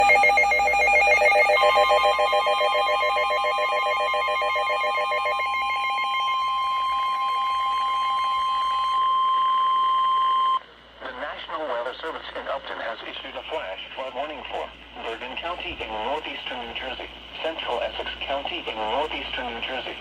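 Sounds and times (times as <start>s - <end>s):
pulsing bell-like alarm ring: 0.0s - 9.3s
steady single-pitch alarm tone: 0.0s - 10.6s.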